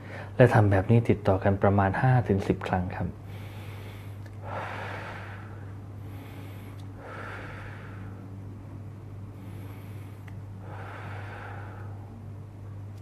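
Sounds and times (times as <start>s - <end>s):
slow deep breaths: 0.0s - 0.4s, 3.2s - 8.4s, 9.2s - 12.4s
steady low hum: 0.0s - 13.0s.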